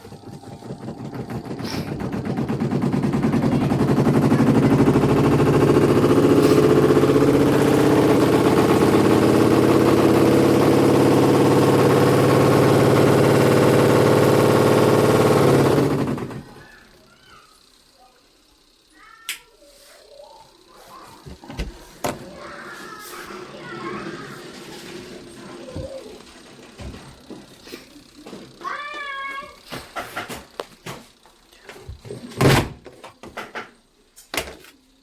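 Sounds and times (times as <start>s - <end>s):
washing machine spin drum knocking: 0.0s - 17.4s.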